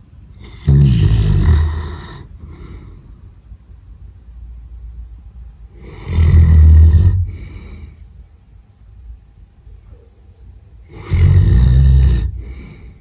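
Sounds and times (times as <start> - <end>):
dog snoring: 0.4 - 2.3, 5.7 - 7.9, 10.9 - 12.9
dog breathing: 5.7 - 8.0, 10.8 - 13.0.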